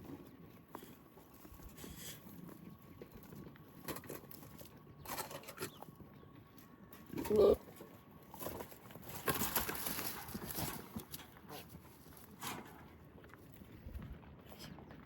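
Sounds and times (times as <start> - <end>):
goat bleating: 7.2 - 7.7.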